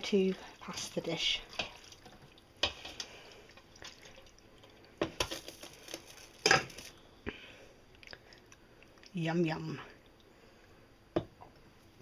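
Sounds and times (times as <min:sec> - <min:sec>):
kitchen utensils clinking: 0:06.4 - 0:06.9.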